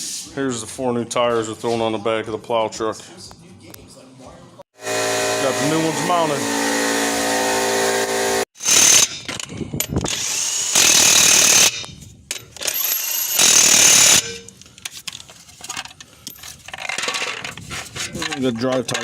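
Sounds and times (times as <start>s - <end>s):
impact wrench whining: 4.8s - 14.6s.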